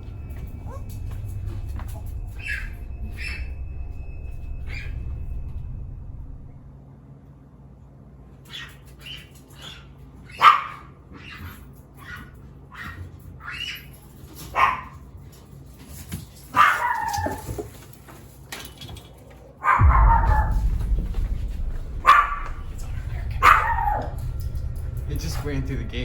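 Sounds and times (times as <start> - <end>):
noisy burst with deep rumble: 0.0 - 7.0, 19.8 - 26.0
wild animals yipping and crying: 0.2 - 5.2, 8.4 - 14.9, 16.5 - 17.7.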